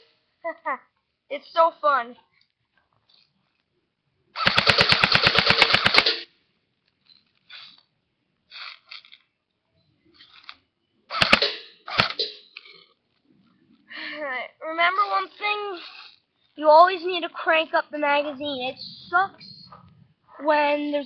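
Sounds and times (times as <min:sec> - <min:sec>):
airsoft rifle full-auto burst: 0:04.4 - 0:06.3, 0:11.1 - 0:12.3
sharp cracks: 0:04.4 - 0:06.3, 0:10.2 - 0:12.7.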